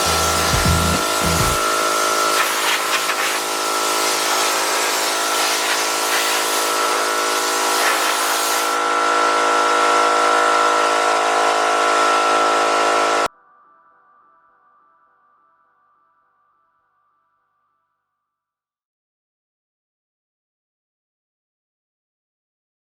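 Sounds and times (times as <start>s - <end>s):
air compressor motor hum: 0.0s - 13.2s
air hissing: 2.3s - 8.8s.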